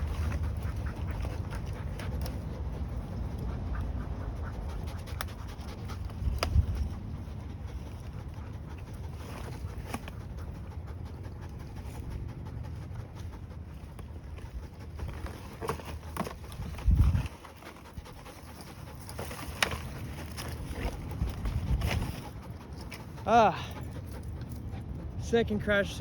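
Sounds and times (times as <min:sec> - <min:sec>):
person panting heavily: 0:21.6 - 0:25.2.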